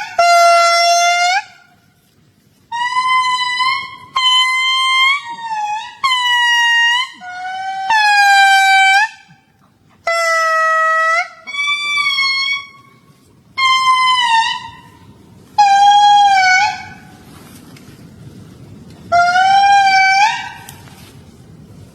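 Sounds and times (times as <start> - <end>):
horn-like animal calls: 2.7 - 9.2, 10.0 - 13.0, 13.6 - 15.0, 15.6 - 17.3, 19.1 - 21.0.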